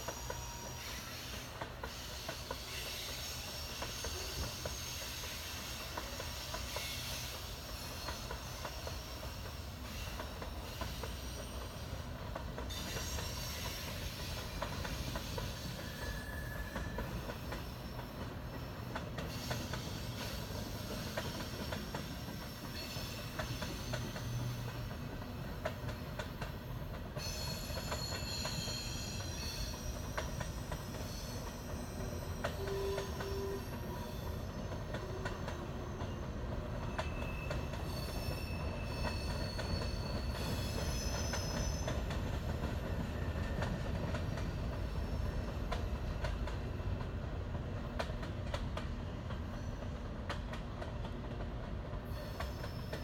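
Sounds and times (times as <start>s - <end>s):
high-pitched wheel squeal: 0.0s - 12.0s, 12.7s - 18.3s, 27.2s - 42.2s
train rumbling past: 0.0s - 53.0s.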